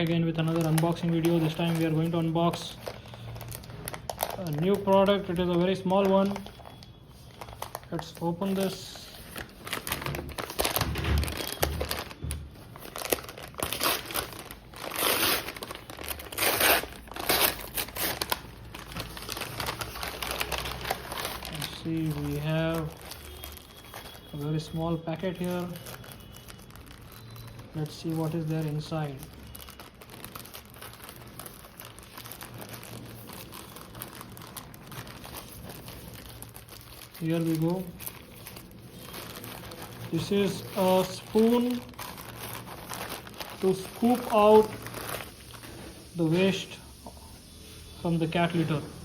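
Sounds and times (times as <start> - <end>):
packaging crinkling: 0.0 - 48.8.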